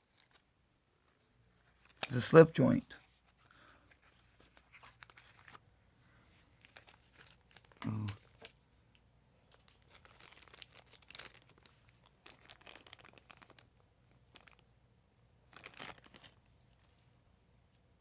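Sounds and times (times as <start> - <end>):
packaging crinkling: 3.2 - 5.6, 6.6 - 8.6, 9.5 - 14.6, 15.5 - 16.8.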